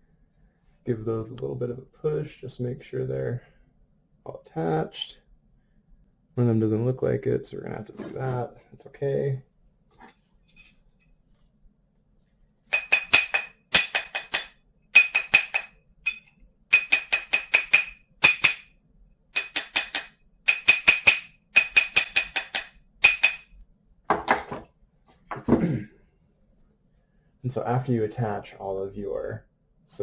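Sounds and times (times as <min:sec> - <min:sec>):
hammer clinking on anvil: 0:12.7 - 0:18.7, 0:19.4 - 0:23.6.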